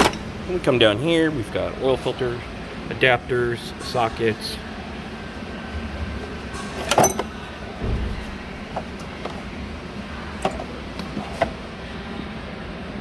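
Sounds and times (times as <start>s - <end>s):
metal hand tools clinking: 6.9s - 7.3s, 10.4s - 10.7s
dull thump: 7.8s - 9.4s.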